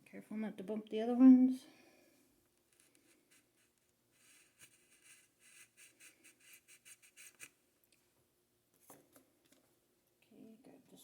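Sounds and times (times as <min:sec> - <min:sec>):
small handling scratches and rustles: 0:02.5 - 0:08.0
light scrapes: 0:02.7 - 0:07.5.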